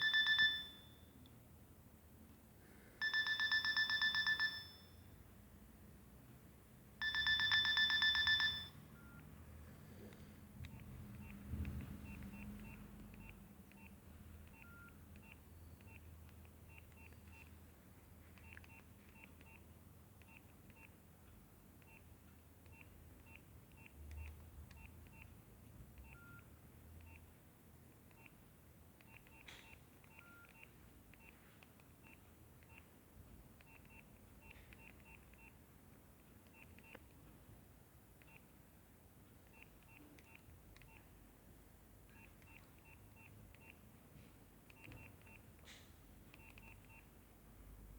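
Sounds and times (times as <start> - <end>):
faint phone ringtone beeps: 0.0 - 1.2, 3.0 - 5.1, 7.0 - 9.3, 29.3 - 31.4.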